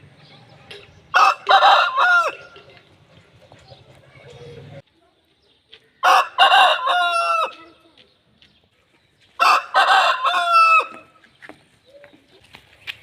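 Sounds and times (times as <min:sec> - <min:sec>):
rooster crowing: 0:01.2 - 0:02.6, 0:06.0 - 0:07.6, 0:09.4 - 0:11.1.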